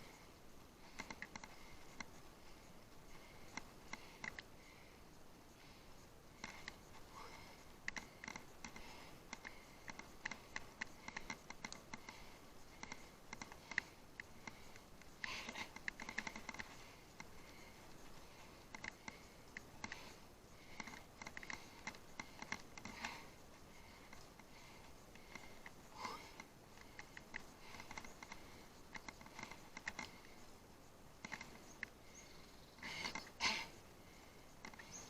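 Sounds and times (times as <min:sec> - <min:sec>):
bicycle clicks and rattles: 0:00.1 - 0:04.9, 0:05.6 - 0:33.4.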